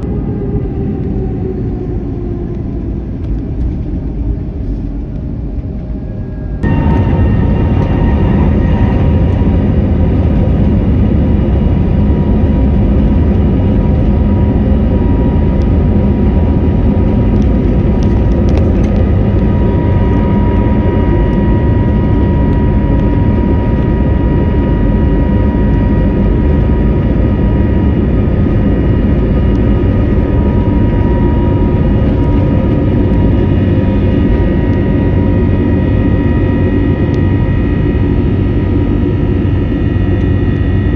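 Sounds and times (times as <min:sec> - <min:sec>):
jet engines running: 0:00.0 - 0:40.9.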